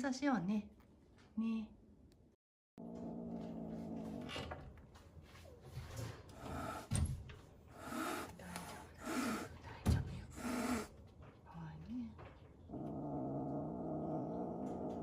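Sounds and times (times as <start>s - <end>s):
kittens hissing: 7.8s - 9.6s, 10.3s - 10.9s
kitten growling: 12.7s - 15.0s.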